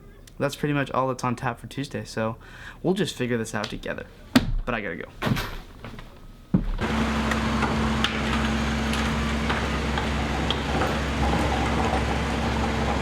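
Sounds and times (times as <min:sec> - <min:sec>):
short thump: 0:04.4 - 0:06.8.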